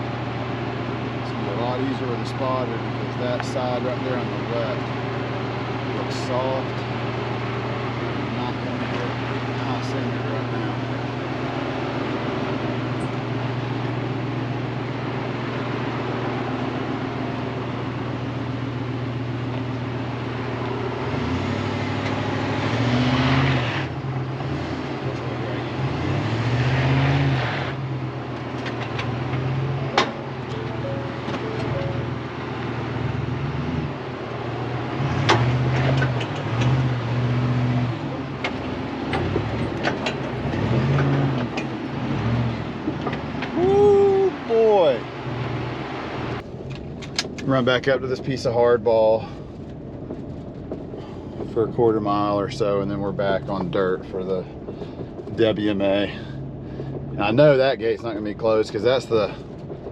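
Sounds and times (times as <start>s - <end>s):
truck engine revving: 0.0s - 59.9s
tyres on gravel: 46.4s - 59.9s.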